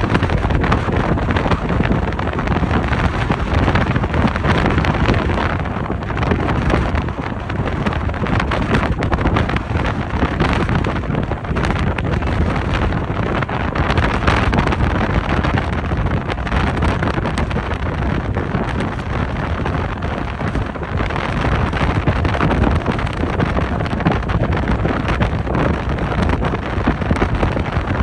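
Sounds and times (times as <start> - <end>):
wind buffeting the microphone: 0.0 - 28.0.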